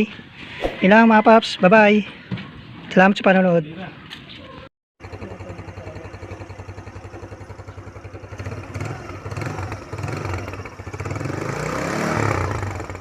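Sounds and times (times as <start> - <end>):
scooter engine running: 5.0 - 13.0.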